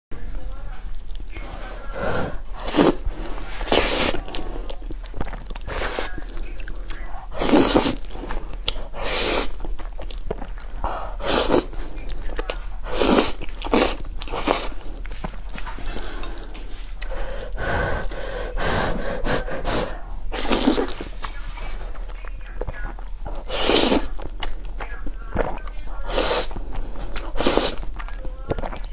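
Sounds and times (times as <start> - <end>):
person chewing: 0.7 - 28.9
person slurping noodles: 1.4 - 6.4, 7.2 - 21.2, 23.3 - 24.3, 26.0 - 27.9.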